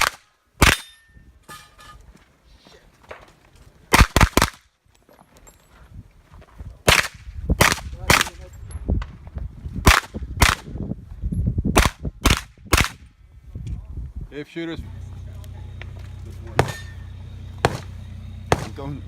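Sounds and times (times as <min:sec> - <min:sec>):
carbine gunshots: 0:03.9 - 0:04.6, 0:09.8 - 0:10.7, 0:17.6 - 0:18.9.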